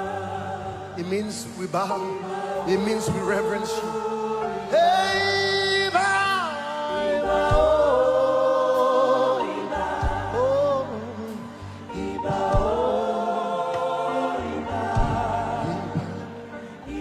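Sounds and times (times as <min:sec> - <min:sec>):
choir singing gospel: 0:00.0 - 0:17.0
low instrumental backing: 0:00.0 - 0:17.0.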